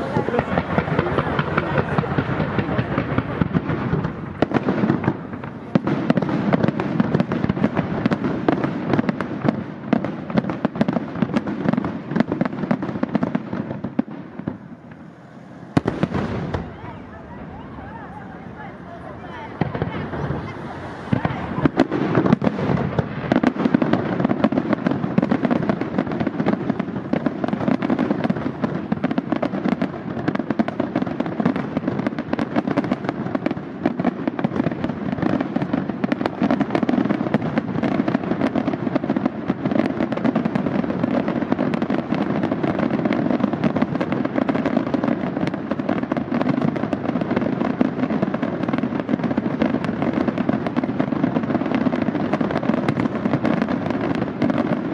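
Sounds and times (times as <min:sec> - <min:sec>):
fireworks bursts and crackling: 0:00.0 - 0:54.9
booming rumble: 0:13.2 - 0:24.3.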